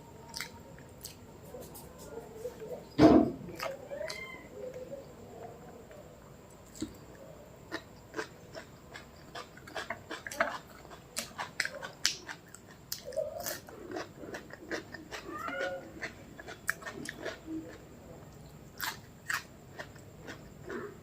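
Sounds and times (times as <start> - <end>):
person chewing with wet mouth clicks: 0.3 - 1.2.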